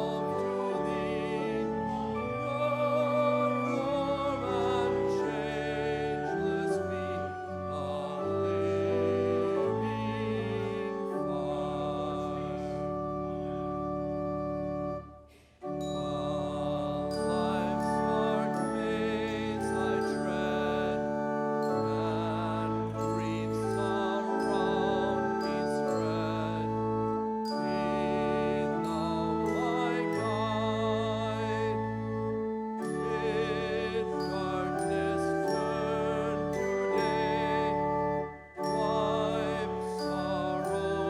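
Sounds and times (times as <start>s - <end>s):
singing: 0.0s - 12.8s, 15.8s - 26.7s, 27.5s - 31.8s, 38.6s - 41.0s
church organ chords: 0.0s - 41.0s.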